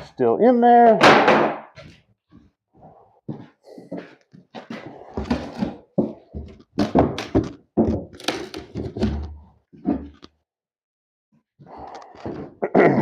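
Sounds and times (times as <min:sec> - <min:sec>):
wood knocking and cracking: 0:01.0 - 0:01.9, 0:05.2 - 0:09.4.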